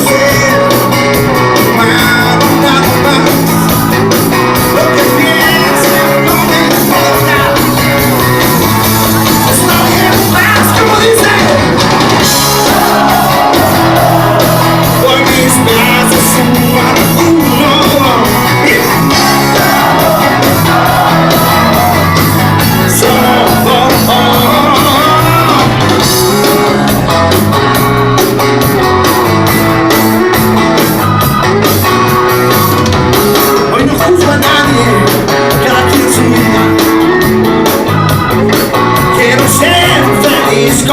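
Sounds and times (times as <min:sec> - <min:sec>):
person singing: 0:00.0 - 0:03.6, 0:04.6 - 0:08.3, 0:12.6 - 0:27.0, 0:33.7 - 0:37.0, 0:39.0 - 0:40.9
rock band playing: 0:00.0 - 0:40.9.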